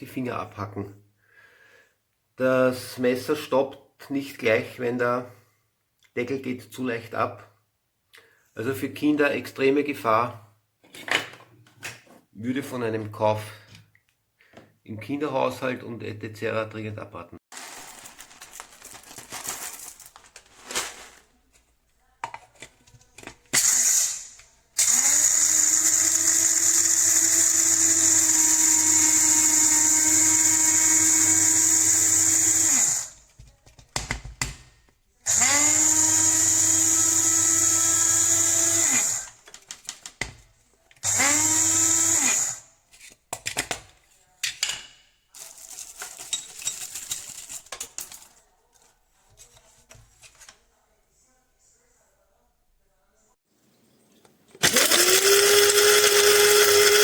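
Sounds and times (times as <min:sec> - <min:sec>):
handling knocks and rattles: 0:17.5 - 0:23.4, 0:45.4 - 0:50.5
coffee grinder whining: 0:23.6 - 0:33.3, 0:35.3 - 0:39.5, 0:41.0 - 0:42.6, 0:54.6 - 0:57.0.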